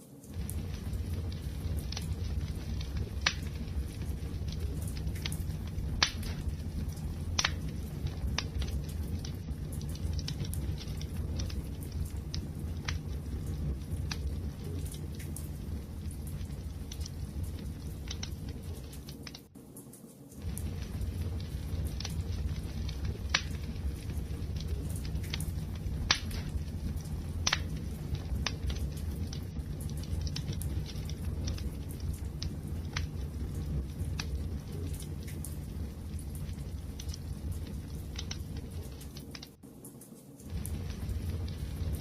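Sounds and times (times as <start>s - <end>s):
low rumble of burning: 0.0s - 39.8s, 40.4s - 42.0s
wood fire crackling and popping: 0.1s - 42.0s.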